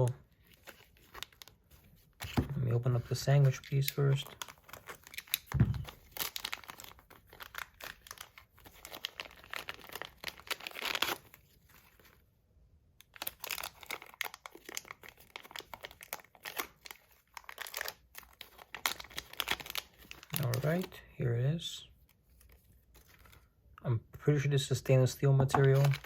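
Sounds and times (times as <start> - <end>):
packaging crinkling and tearing: 0.0 - 12.2, 13.0 - 21.0, 22.0 - 23.5, 25.5 - 26.0.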